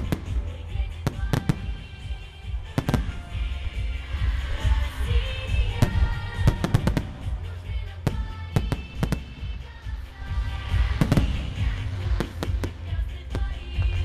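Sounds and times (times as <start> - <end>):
fireworks bangs: 0.0 - 14.0
music playing: 0.0 - 14.0.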